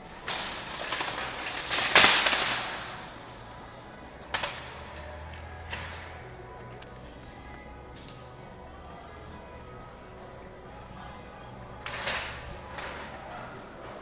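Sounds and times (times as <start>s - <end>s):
shopping basket rattling clatter: 0.0s - 3.5s, 5.6s - 6.3s, 10.8s - 14.0s.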